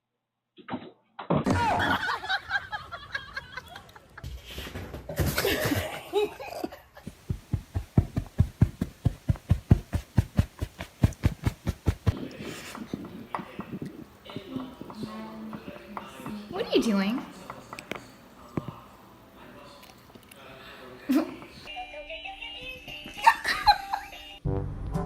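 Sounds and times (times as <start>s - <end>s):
people laughing: 1.5s - 4.3s, 5.3s - 7.2s, 23.2s - 24.4s.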